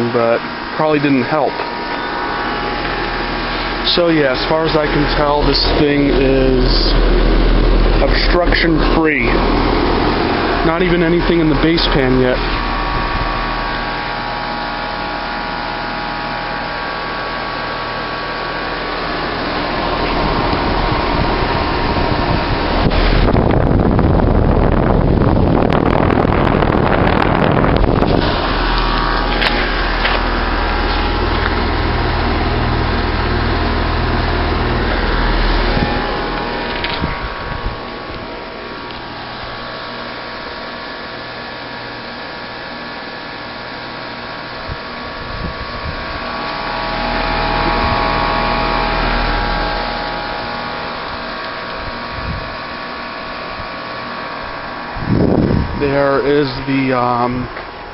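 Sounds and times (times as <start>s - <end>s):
fan whoosh: 0.0s - 42.2s, 43.7s - 57.9s
compressor humming tones: 0.0s - 57.9s
heat pump running: 0.0s - 57.9s
wind on microphone: 19.8s - 29.9s, 35.6s - 38.3s, 44.6s - 46.4s, 47.1s - 52.7s, 54.8s - 56.7s.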